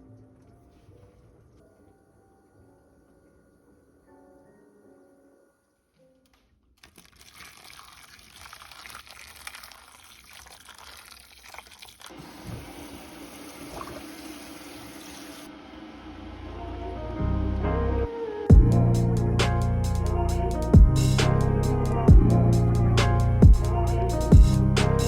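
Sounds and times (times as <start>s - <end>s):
water running and splashing: 6.8s - 15.5s.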